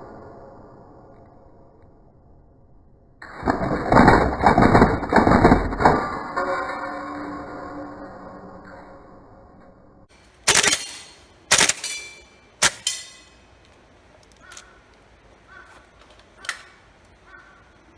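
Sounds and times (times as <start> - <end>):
airsoft rifle shots: 10.4 - 13.4.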